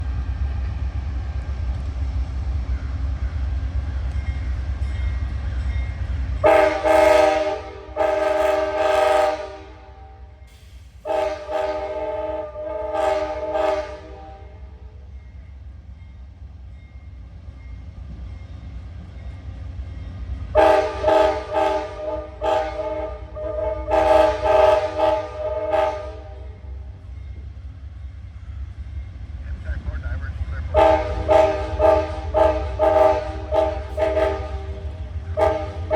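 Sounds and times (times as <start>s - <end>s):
locomotive air horn blasts: 6.4s - 10.3s, 11.0s - 14.8s, 20.5s - 26.7s, 30.7s - 35.9s
diesel engine rumbling: 14.0s - 35.9s.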